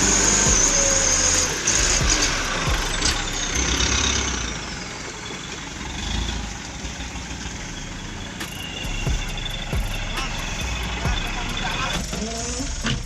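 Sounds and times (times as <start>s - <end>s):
diesel truck engine at low revs: 0.0s - 13.0s.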